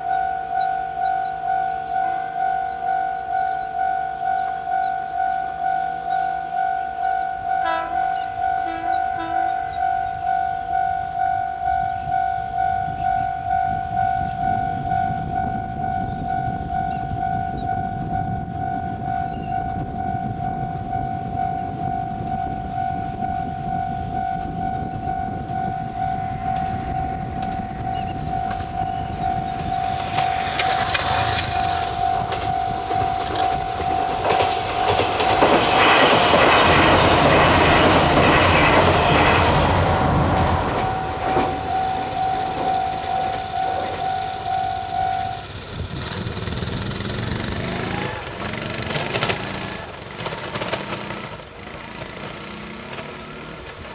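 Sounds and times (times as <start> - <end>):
level crossing warning bell: 0.0 - 50.0
train rumble: 0.0 - 53.9
train wheels clattering over rails: 28.4 - 53.9.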